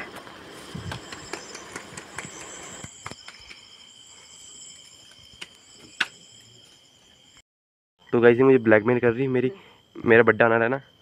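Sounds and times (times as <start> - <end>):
insects chirring: 0.0 - 7.4, 8.0 - 11.0.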